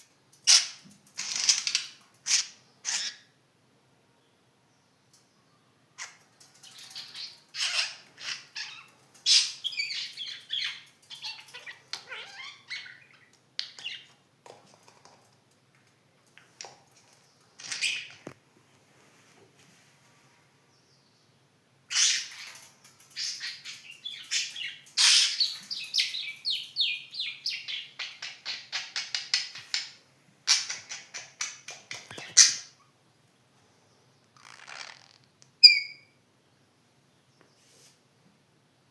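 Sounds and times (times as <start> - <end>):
budgerigar chirping: 35.6 - 36.1.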